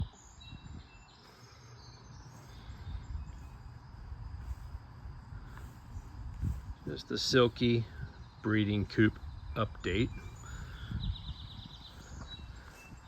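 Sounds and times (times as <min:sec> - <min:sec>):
low uneven rumble: 0:00.6 - 0:12.8.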